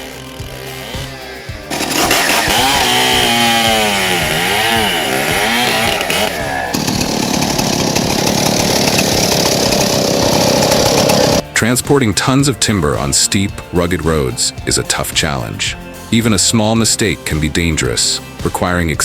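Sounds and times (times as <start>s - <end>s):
chainsaw running: 0.0s - 11.4s.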